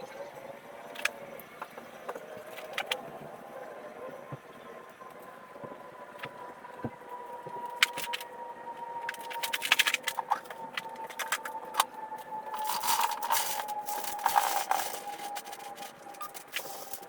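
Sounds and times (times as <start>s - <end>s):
faint steady whine: 0.0s - 17.0s
hard objects clinking and scraping: 12.5s - 17.0s.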